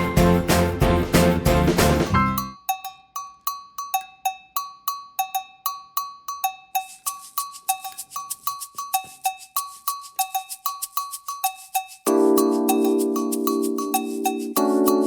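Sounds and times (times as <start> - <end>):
looping bell-like percussive music: 0.0 - 15.0.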